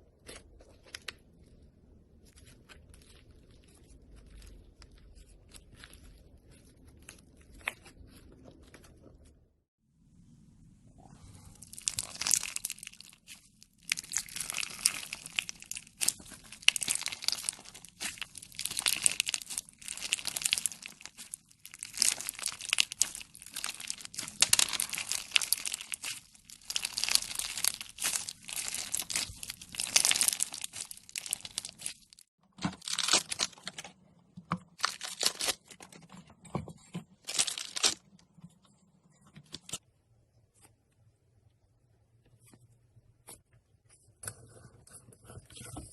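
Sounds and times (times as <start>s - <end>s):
slime squishing and crackling: 2.1s - 9.4s, 11.5s - 34.0s, 34.7s - 36.1s, 37.2s - 38.1s.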